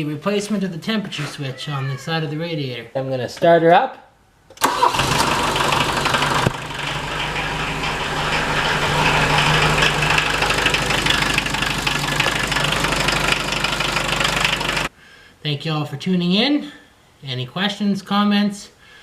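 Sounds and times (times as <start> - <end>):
diesel engine starting and idling: 4.6 - 14.9.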